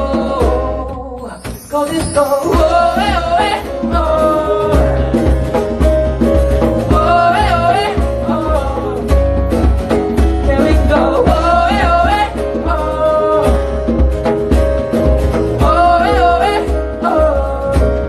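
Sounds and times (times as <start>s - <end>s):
wavering vocal melody: 0.0s - 5.8s, 6.8s - 9.3s, 10.5s - 13.8s, 15.6s - 18.0s
acoustic pop-rock song: 0.0s - 18.0s.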